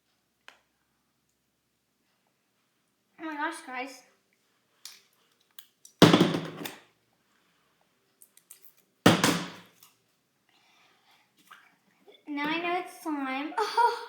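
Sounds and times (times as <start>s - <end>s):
loud thunks: 6.0s - 6.8s, 9.1s - 9.6s.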